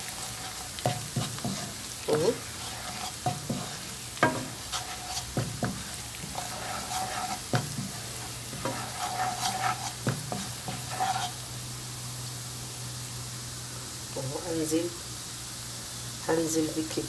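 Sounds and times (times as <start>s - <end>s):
spoon scraping pan: 0.0s - 11.5s
spices sizzling in pan: 0.0s - 17.0s
spoon knocking against pan: 3.0s - 11.0s.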